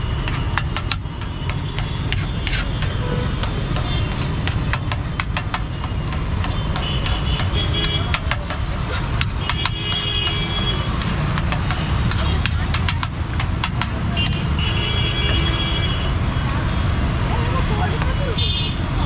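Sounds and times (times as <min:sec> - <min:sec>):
traffic rumble: 0:00.0 - 0:19.0
sharp clicks and taps: 0:00.2 - 0:14.6
faint voices: 0:16.6 - 0:19.0.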